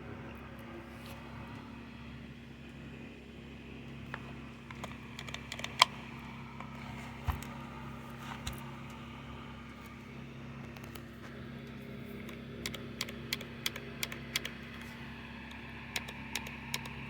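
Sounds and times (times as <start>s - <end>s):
steady low hum: 0.0s - 17.0s
chainsaw parts clicking and knocking: 4.7s - 6.0s.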